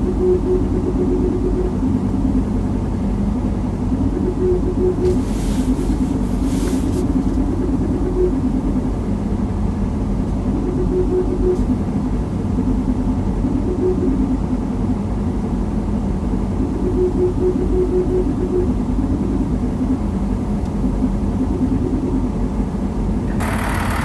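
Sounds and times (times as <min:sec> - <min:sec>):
road and engine rumble: 0:22.6 - 0:24.0
abnormal hum: 0:23.3 - 0:24.0.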